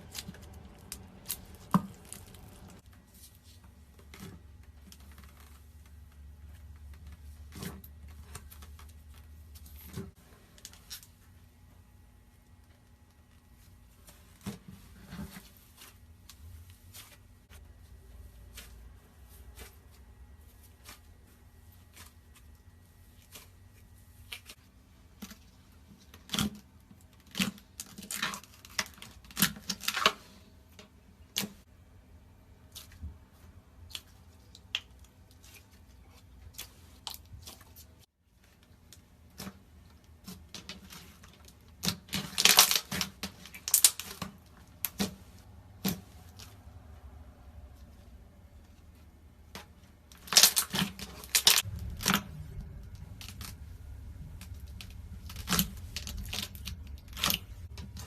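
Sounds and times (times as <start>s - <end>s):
sticky slime squishing: 0.0s - 11.2s, 32.6s - 58.0s.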